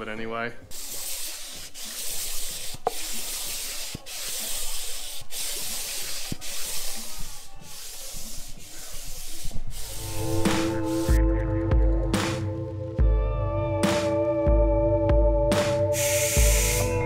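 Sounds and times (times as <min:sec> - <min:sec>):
abrasive scraping metal: 0:09.8 - 0:11.2.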